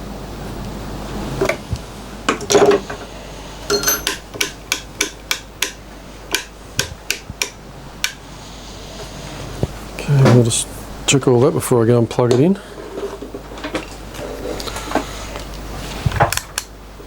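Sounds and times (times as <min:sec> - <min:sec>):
hand tools clicking on metal: 0:03.7 - 0:08.2.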